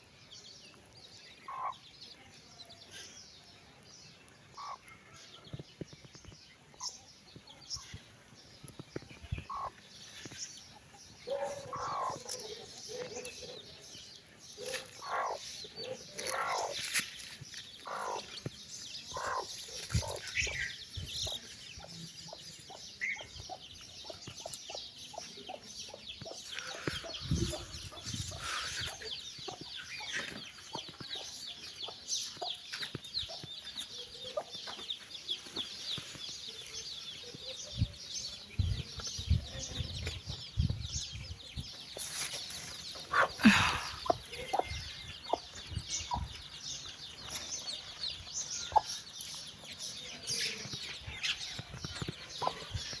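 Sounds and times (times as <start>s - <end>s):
chicks peeping: 0.4s - 3.6s, 4.5s - 53.0s
hen clucking: 9.5s - 9.8s, 11.4s - 13.3s, 14.6s - 15.4s, 19.1s - 20.2s.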